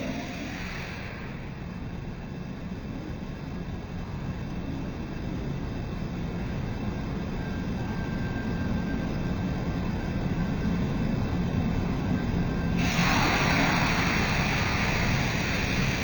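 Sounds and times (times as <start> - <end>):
machine humming: 0.0 - 1.8
faint high whine: 0.0 - 2.5.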